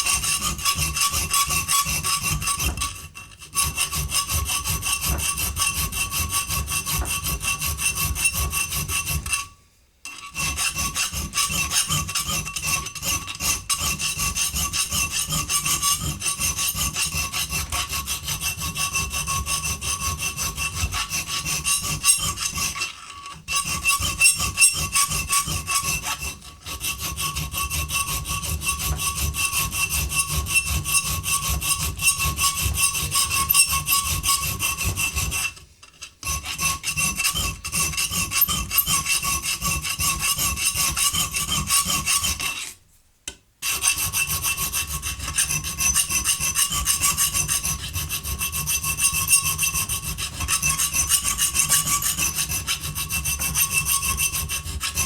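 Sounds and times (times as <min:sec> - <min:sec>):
file rasping back and forth: 0:00.0 - 0:42.8, 0:43.6 - 0:55.0.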